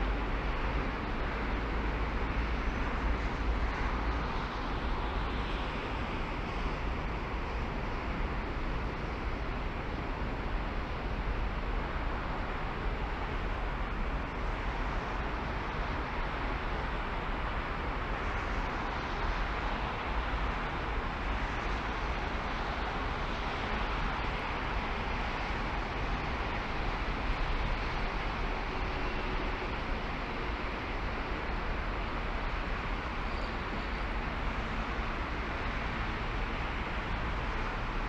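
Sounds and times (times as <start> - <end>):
tyre and wind hiss: 0.0 - 38.0.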